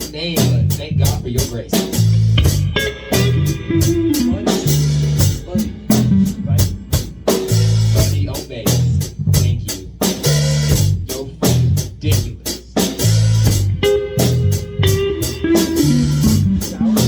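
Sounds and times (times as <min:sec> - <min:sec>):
bass guitar: 0:00.0 - 0:17.0
drum kit beat: 0:00.0 - 0:17.0
guitar playing: 0:02.2 - 0:07.8, 0:13.5 - 0:17.0.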